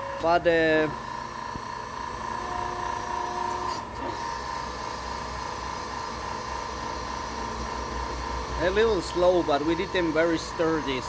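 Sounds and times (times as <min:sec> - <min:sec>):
hydraulic pump whine: 0:00.0 - 0:11.0.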